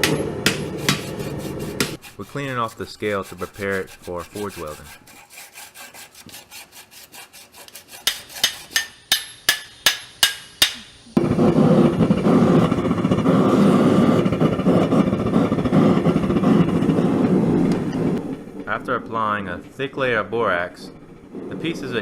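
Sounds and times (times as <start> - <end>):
faint scraping strokes: 1.0 - 8.7
forge roaring: 11.2 - 22.0.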